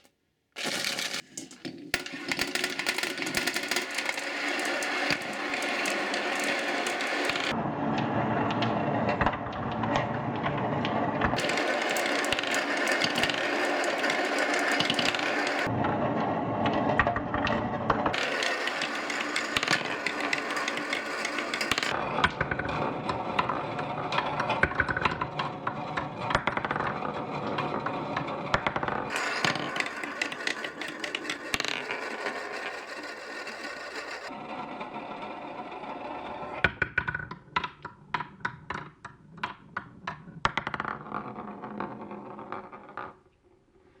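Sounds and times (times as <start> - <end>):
glass marbles rattling on a run: 0.6 - 7.6, 11.4 - 15.7, 18.1 - 22.0, 28.5 - 34.3.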